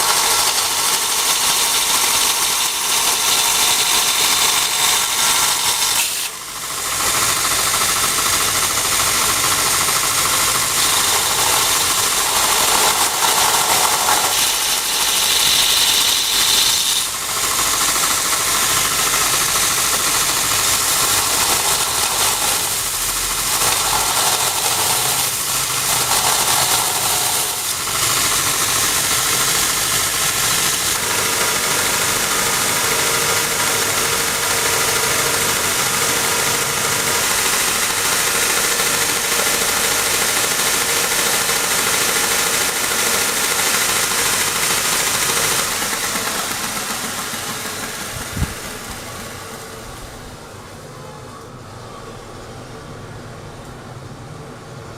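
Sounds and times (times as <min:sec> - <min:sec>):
harsh metal-working hiss: 0:00.0 - 0:34.0
machine motor hum: 0:00.0 - 0:50.6.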